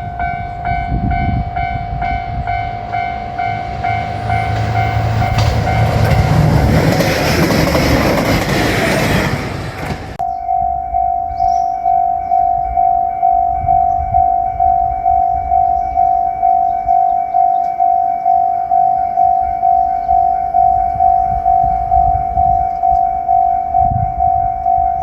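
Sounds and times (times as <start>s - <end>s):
railroad crossing bell ringing: 0.0s - 25.0s
train engine hum: 0.0s - 25.0s
train wheel clatter: 2.0s - 10.2s.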